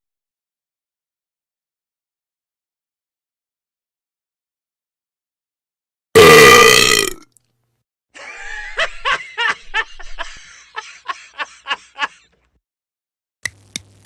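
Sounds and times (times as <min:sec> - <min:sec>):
loud long burp: 0:06.2 - 0:07.3
person laughing: 0:08.2 - 0:12.5.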